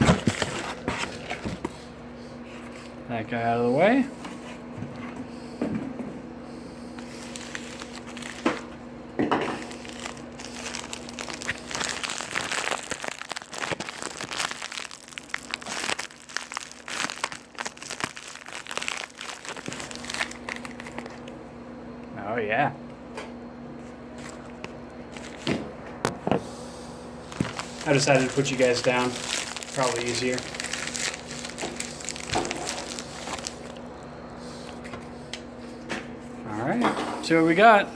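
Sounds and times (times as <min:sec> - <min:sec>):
packing material crinkling: 0:07.0 - 0:08.8, 0:09.4 - 0:21.4, 0:24.2 - 0:25.5, 0:27.2 - 0:34.8.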